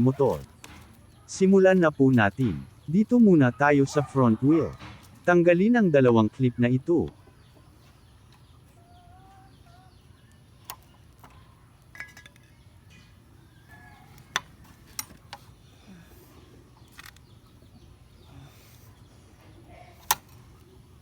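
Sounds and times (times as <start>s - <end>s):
faint bird chirps: 5.4s - 21.0s
small metallic clicks and clinks: 10.6s - 12.6s.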